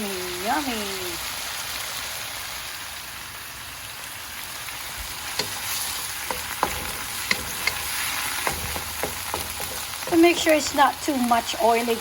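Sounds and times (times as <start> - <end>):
vegetables sizzling in a pan: 0.0 - 12.0
utensil clicking against pan: 5.3 - 10.8.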